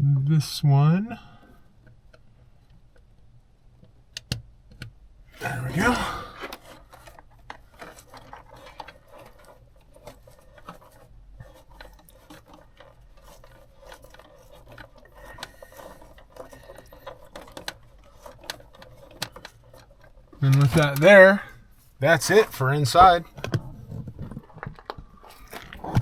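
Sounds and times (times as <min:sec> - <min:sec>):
light clicks and rubbing: 0:05.8 - 0:26.0.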